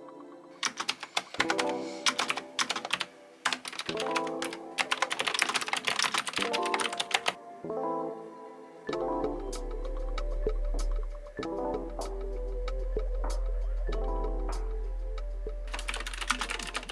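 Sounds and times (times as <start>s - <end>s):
background music: 0.0s - 16.9s
clicky mechanical keyboard typing: 0.6s - 7.4s, 15.7s - 16.9s.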